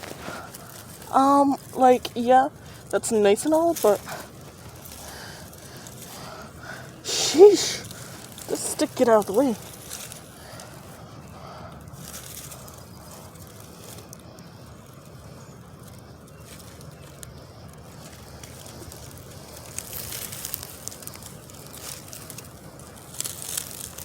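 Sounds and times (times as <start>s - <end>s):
crackles: 0.0s - 24.0s
hands rustling through dry litter: 0.0s - 24.0s.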